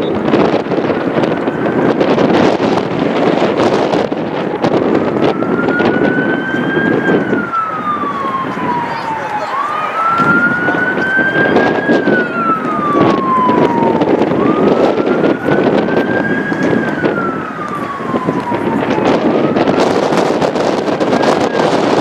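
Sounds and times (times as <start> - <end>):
siren wailing: 0.0 - 22.0
steady noisy background: 0.0 - 22.0.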